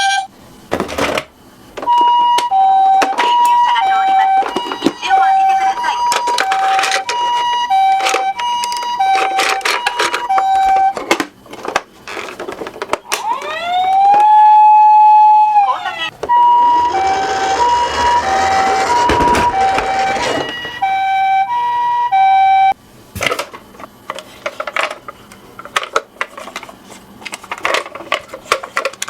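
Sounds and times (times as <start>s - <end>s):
toy siren two-tone: 1.9s - 11.0s, 13.1s - 22.8s
wailing siren tone: 1.9s - 11.0s, 13.1s - 22.8s
toy cars clicking and clattering: 5.8s - 13.5s, 16.7s - 20.7s, 24.1s - 29.0s
low rolling rumble: 16.1s - 21.2s.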